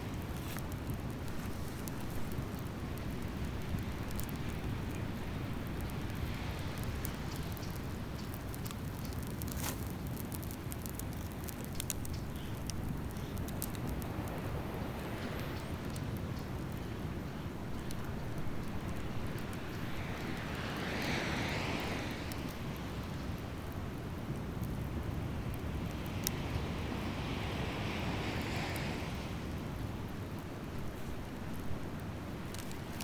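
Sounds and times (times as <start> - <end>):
campfire crackling and popping: 0.0 - 33.0
surf breaking on beach: 19.5 - 22.5, 26.6 - 29.4.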